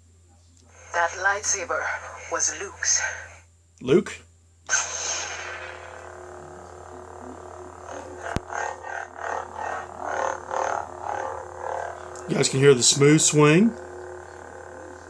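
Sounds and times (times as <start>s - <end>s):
steady electronic hum: 0.1s - 15.0s
lightsaber ignition: 4.7s - 15.0s.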